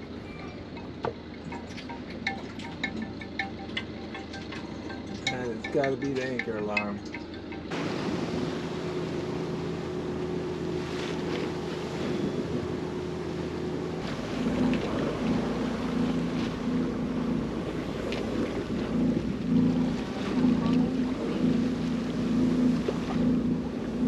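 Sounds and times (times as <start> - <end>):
boat engine humming: 0.0 - 24.0
water around hull: 0.0 - 24.0
wind on microphone: 5.2 - 24.0.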